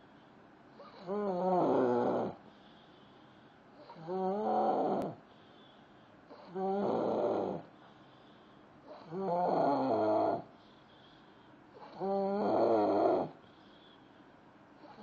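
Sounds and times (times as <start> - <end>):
person snoring loudly: 0.8 - 2.4, 3.9 - 5.2, 6.4 - 7.7, 9.0 - 10.5, 11.9 - 13.4.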